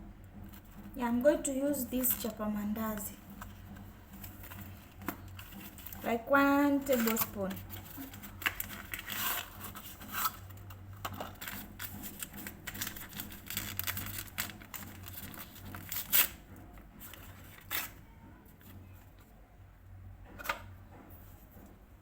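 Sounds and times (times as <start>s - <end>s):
packaging rustling and crinkling: 2.0s - 18.0s.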